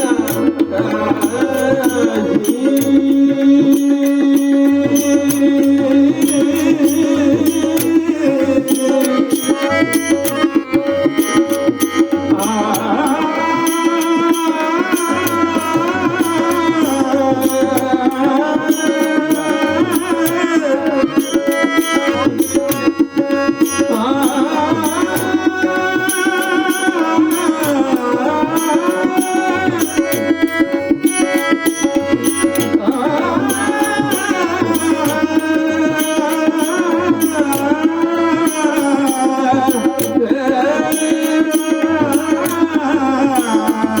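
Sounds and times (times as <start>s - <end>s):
drum rhythm: 0.0s - 44.0s
person singing devotional song: 0.0s - 44.0s.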